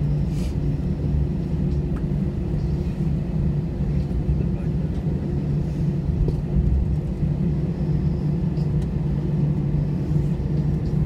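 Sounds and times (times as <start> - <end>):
jet cabin low rumble: 0.0 - 11.0.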